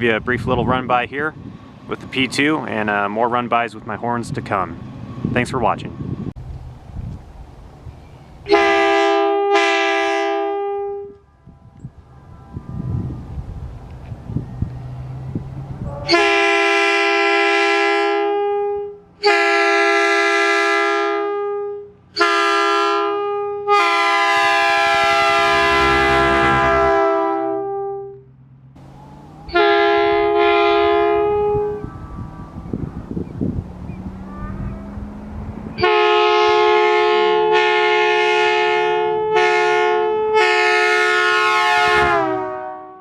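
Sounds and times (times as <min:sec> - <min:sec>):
locomotive air horn blasts: 0:08.4 - 0:13.2, 0:15.8 - 0:28.2, 0:29.4 - 0:32.0, 0:35.8 - 0:43.0.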